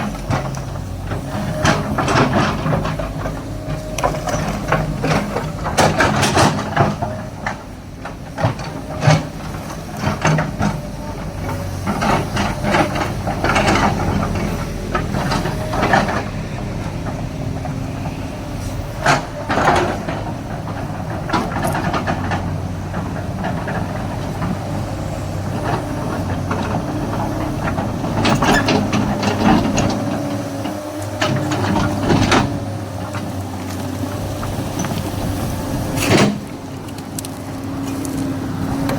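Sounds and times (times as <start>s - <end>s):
excavator diesel engine running: 0.0s - 38.9s
metallic clanks and knocks: 25.6s - 33.4s.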